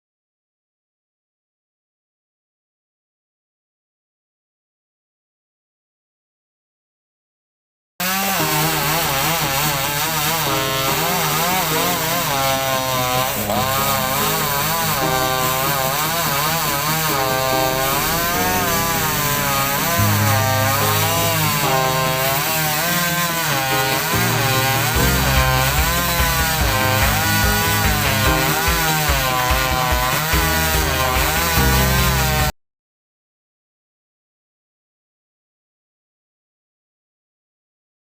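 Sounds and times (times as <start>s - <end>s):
chainsaw cutting wood: 8.0s - 32.5s.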